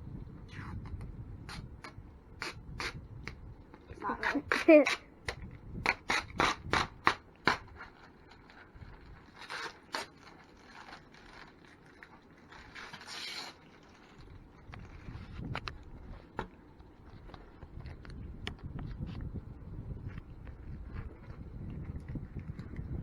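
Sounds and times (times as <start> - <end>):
plastic film rasping scrapes: 5.9 - 11.6, 12.5 - 14.2.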